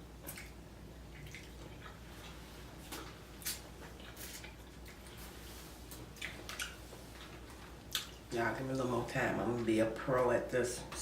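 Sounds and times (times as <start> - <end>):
wet chewing clicks and smacks: 0.2 - 5.2, 5.9 - 8.3.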